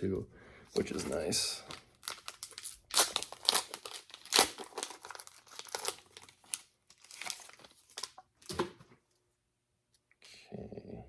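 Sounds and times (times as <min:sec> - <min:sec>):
foil wrapper crinkling: 0:00.8 - 0:08.2.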